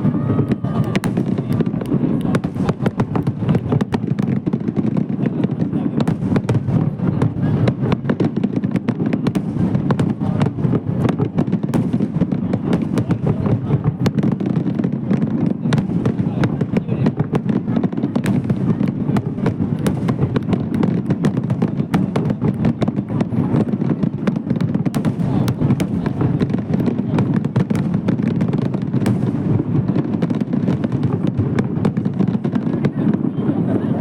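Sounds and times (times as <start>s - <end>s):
fireworks crackling: 0.0s - 34.0s.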